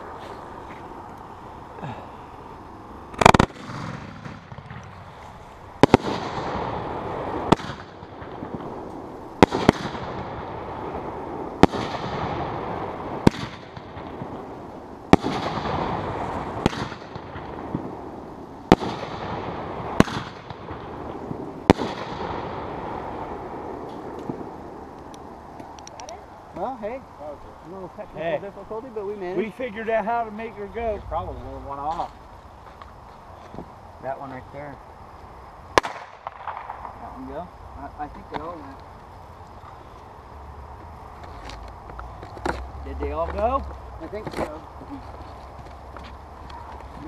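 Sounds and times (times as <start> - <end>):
firework hissing and crackling: 0.0 - 47.0
firework bangs: 3.1 - 25.8, 35.6 - 40.3.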